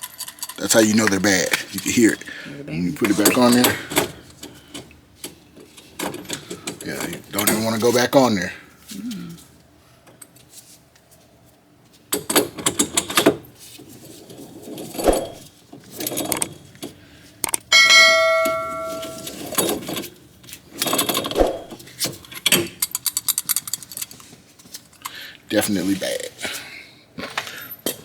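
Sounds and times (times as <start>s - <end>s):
metal part ringing when struck: 17.7s - 19.4s
wheel bearing grinding: 17.7s - 20.0s.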